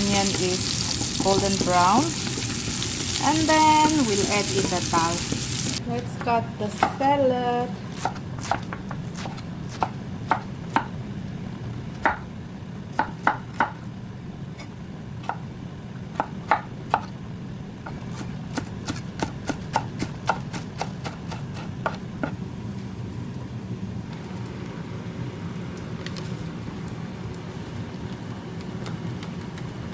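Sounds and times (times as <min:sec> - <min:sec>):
knife chopping on cutting board: 0:07.9 - 0:10.9, 0:17.9 - 0:22.3.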